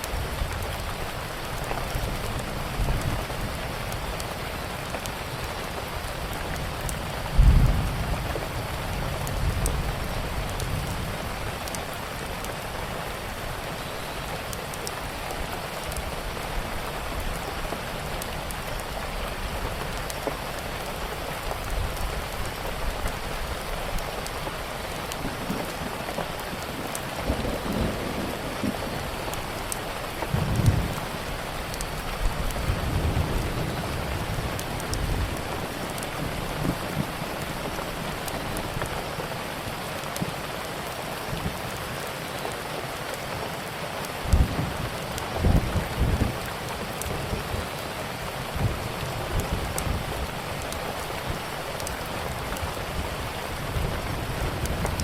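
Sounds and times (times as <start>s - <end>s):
wood fire crackling: 0.0s - 41.6s, 48.4s - 55.0s
steady rain: 0.0s - 55.0s
thunder rumbling: 6.4s - 14.0s, 25.0s - 39.0s
loud thunderclap: 7.4s - 8.2s.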